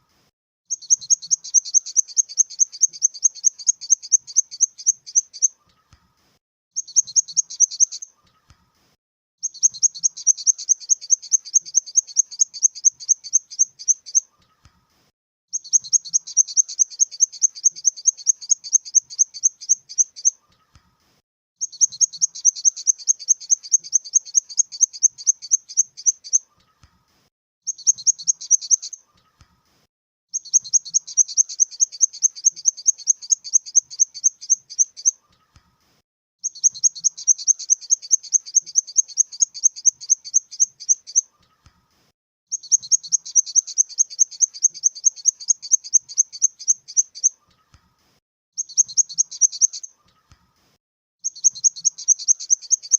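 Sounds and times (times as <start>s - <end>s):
grasshopper chirping: 0.7s - 5.5s, 9.4s - 14.0s, 15.6s - 20.3s, 21.6s - 26.4s, 30.4s - 35.1s, 36.4s - 41.2s, 42.5s - 47.3s, 51.2s - 52.9s.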